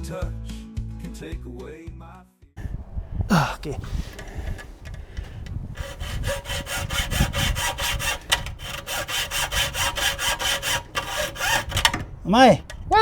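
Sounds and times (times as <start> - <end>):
hand saw cutting: 3.3 - 13.0.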